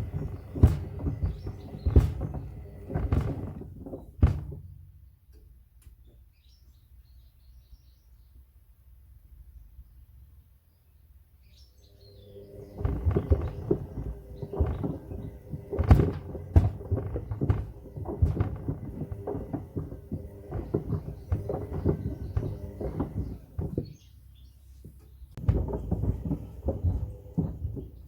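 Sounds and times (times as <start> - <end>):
faint motor hum: 0.0 - 5.0, 11.5 - 28.0
wood knocking in washing machine drum: 0.0 - 5.1, 12.5 - 28.0.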